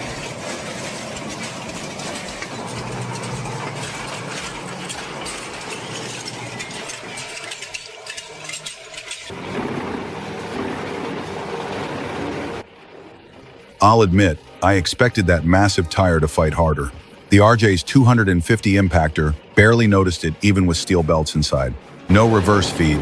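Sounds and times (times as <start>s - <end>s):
material clattering and cracking: 0.0s - 9.4s
shredding machine engine drone: 0.0s - 23.0s.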